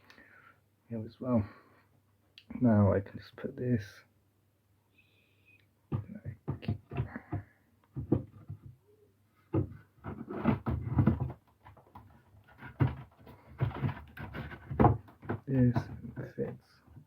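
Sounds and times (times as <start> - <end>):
plastic piece knocking against wood: 5.9 - 8.8, 9.5 - 16.6.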